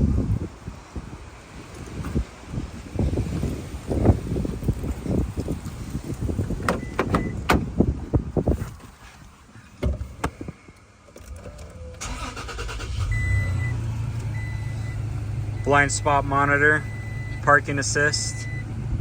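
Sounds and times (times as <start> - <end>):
car door shutting: 6.4 - 7.8
engine cranking and idling: 11.2 - 19.0.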